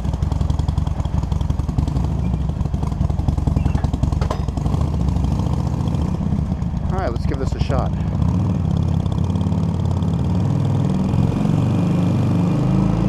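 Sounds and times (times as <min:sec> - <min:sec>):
motorcycle engine idling: 0:00.0 - 0:10.3.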